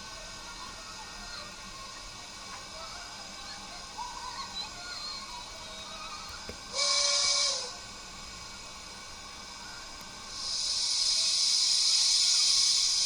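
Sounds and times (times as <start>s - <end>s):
loud steam hiss: 0.0s - 13.0s
steam whistle toot: 6.7s - 7.8s.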